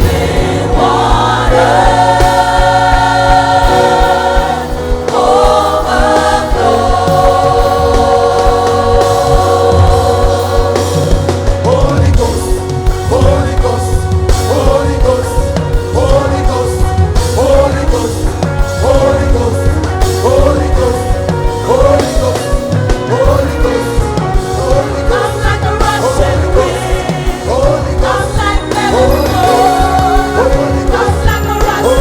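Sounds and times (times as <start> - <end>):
bass line: 0.0 - 32.0
drum kit: 0.0 - 32.0
gospel band playing: 0.0 - 32.0
person singing: 0.0 - 32.0.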